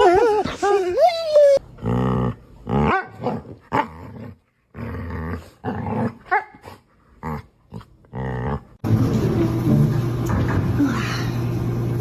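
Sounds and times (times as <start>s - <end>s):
dog growling: 1.8s - 8.8s.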